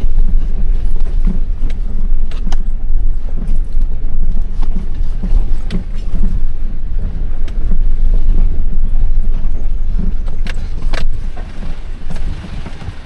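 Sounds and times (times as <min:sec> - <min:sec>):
diesel engine rumbling: 0:00.0 - 0:13.0.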